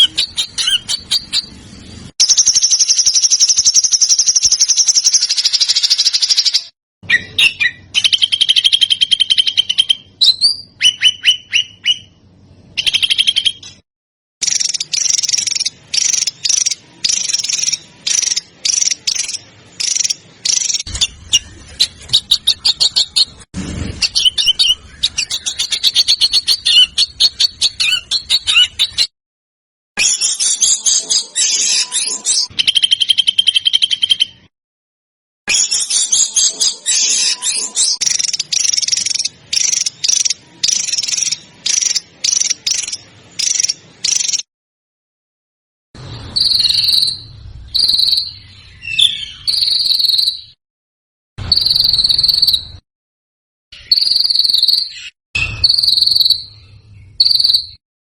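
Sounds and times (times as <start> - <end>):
songbirds trilling and whistling: 0.0 - 13.8, 14.4 - 29.1, 30.0 - 34.5, 35.5 - 44.5, 46.0 - 50.6, 51.4 - 52.8, 53.8 - 57.8.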